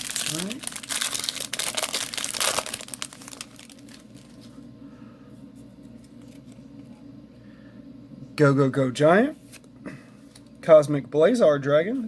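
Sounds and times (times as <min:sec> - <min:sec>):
cards rustling: 0:00.0 - 0:04.5
wrapper crinkling and tearing: 0:00.0 - 0:04.5.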